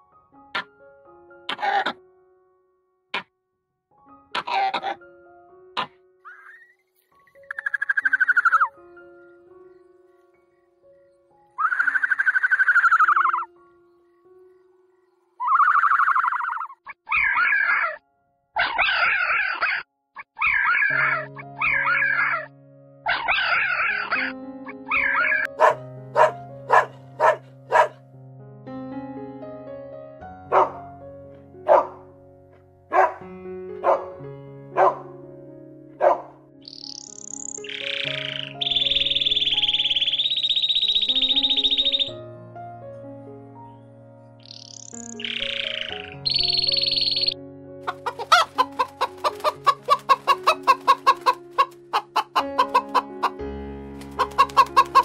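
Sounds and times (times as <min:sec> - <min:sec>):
background music with held notes: 0:00.0 - 0:19.2, 0:19.9 - 0:55.0
dog barking: 0:18.6 - 0:19.8, 0:23.1 - 0:24.3, 0:24.9 - 0:28.0, 0:30.5 - 0:30.8, 0:31.7 - 0:32.1, 0:32.9 - 0:33.2, 0:33.8 - 0:34.2, 0:34.8 - 0:35.1, 0:36.0 - 0:36.4.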